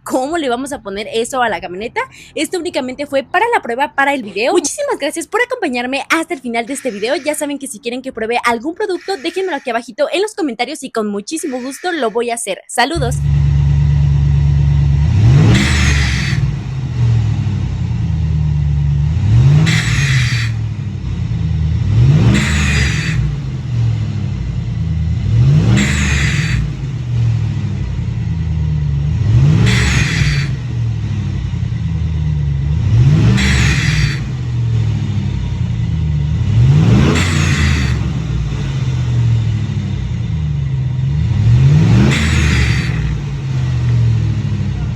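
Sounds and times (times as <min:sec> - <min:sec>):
pickup truck engine revving: 0:13.0 - 0:44.9.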